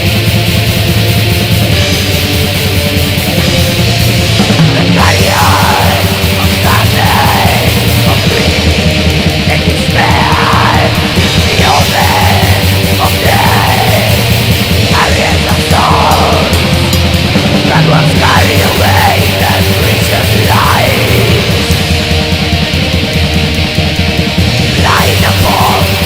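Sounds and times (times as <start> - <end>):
distorted guitars: 0.0 - 26.0
fast dense drumming: 0.0 - 26.0
harsh screamed vocals: 4.4 - 22.0, 24.6 - 26.0.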